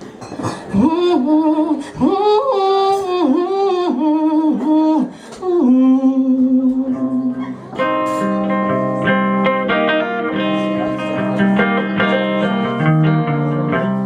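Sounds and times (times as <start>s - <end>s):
woman singing: 0.7s - 7.7s
guitar chord: 6.9s - 14.0s.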